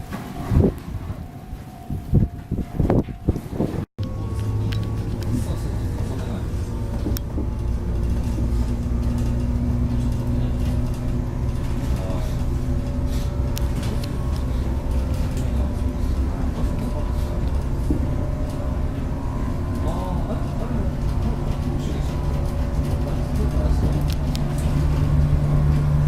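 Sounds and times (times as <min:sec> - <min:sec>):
train running hum: 0:00.0 - 0:26.0.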